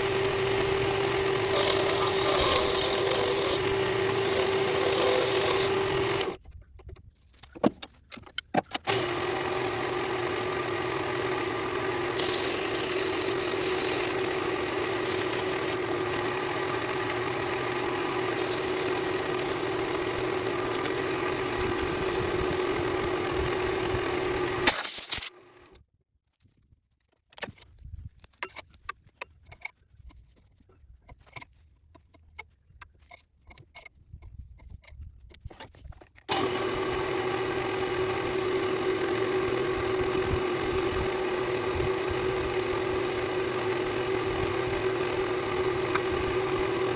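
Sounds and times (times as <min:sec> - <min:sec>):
power tool motor humming: 0:00.0 - 0:06.4, 0:08.8 - 0:25.8, 0:36.3 - 0:46.9.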